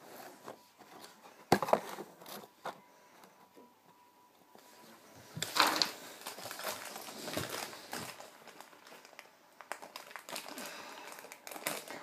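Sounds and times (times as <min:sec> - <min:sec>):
plastic bags crinkling: 0:05.3 - 0:12.0.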